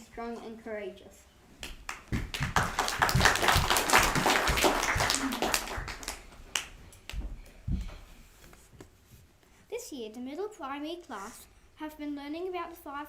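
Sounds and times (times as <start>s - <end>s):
audience clapping: 1.6s - 7.2s.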